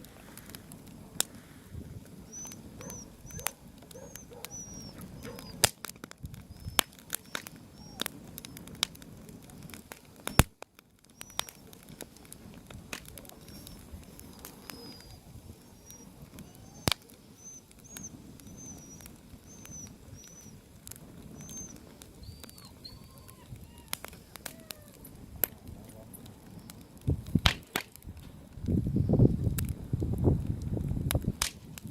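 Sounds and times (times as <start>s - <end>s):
wood fire crackling and popping: 0.0s - 31.9s
small birds chirping: 2.2s - 5.7s, 6.4s - 12.0s, 13.2s - 25.2s, 25.8s - 27.0s.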